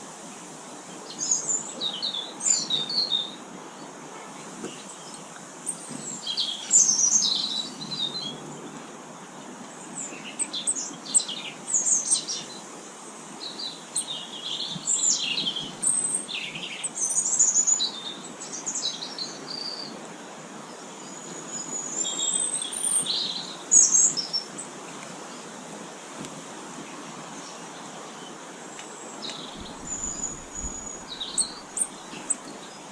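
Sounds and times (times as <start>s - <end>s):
songbirds chirping: 0.0s - 32.9s
thin rising bird whistle: 29.2s - 32.8s.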